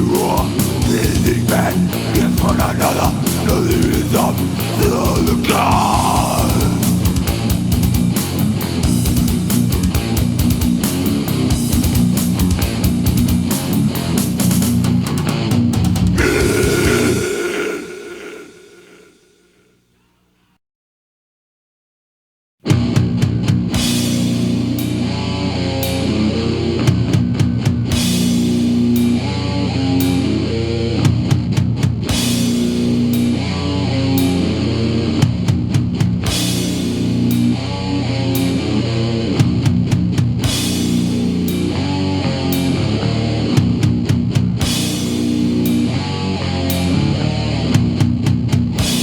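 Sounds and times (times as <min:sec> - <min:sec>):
death metal band playing: 0:00.0 - 0:19.2.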